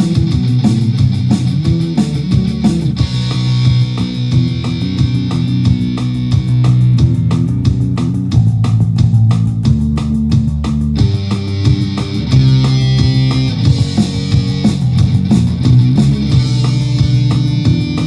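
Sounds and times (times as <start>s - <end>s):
punk rock music: 0.0s - 18.0s.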